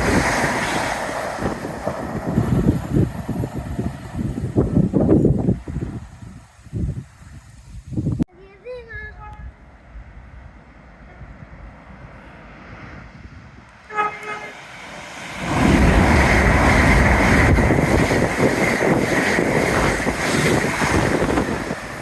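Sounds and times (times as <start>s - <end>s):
train passing at speed: 0.0s - 8.0s, 9.0s - 22.0s
train horn: 13.8s - 14.7s.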